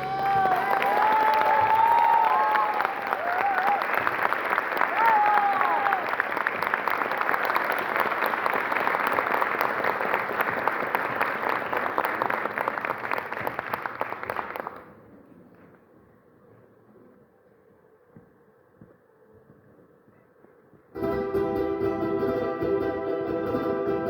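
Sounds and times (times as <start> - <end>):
audience applauding: 0.0 - 15.0.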